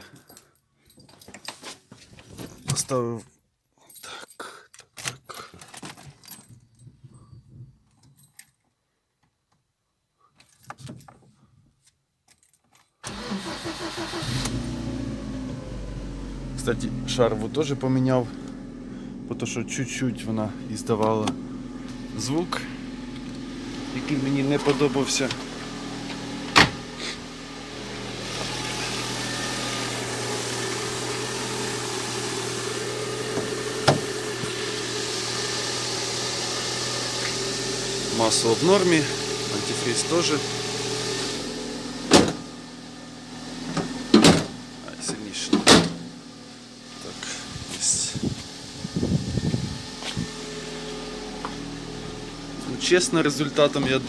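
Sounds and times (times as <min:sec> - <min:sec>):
car engine idling: 0:13.1 - 0:54.0
starter cranking: 0:28.0 - 0:41.3.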